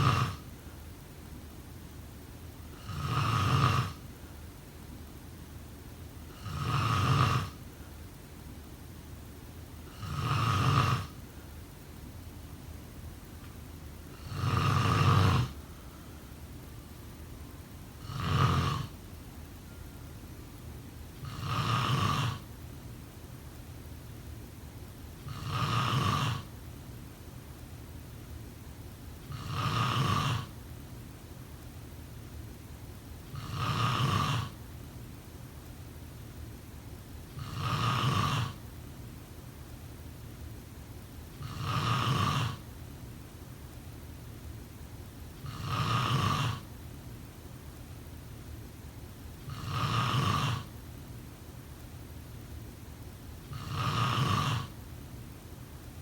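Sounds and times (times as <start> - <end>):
person snoring: 0.0 - 0.5, 2.8 - 4.0, 6.3 - 7.6, 9.9 - 11.2, 14.1 - 15.6, 18.0 - 19.0, 21.2 - 22.4, 25.2 - 26.5, 29.3 - 30.5, 33.3 - 34.6, 37.4 - 38.6, 41.4 - 42.6, 45.4 - 46.7, 49.5 - 50.7, 53.5 - 54.8
steady low hum: 0.0 - 56.0.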